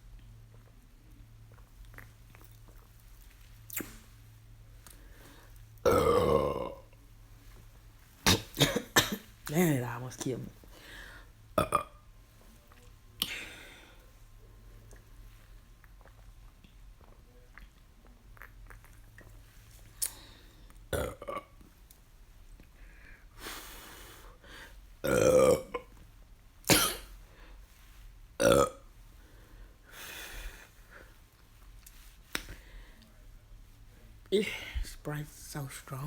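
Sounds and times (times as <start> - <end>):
woman burping: 5.8 - 6.8, 11.6 - 12.0, 20.9 - 21.5, 25.0 - 25.9, 26.7 - 27.1, 28.4 - 28.8.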